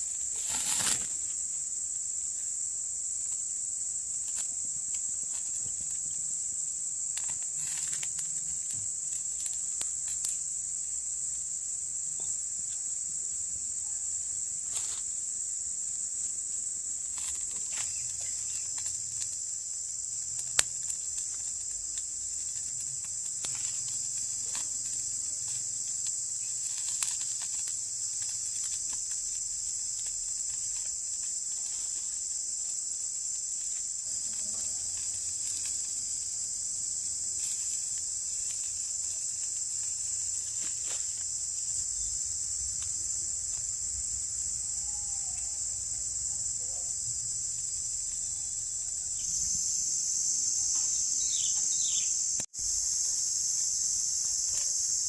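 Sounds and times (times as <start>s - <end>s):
insect chorus drone: 0.0s - 55.0s.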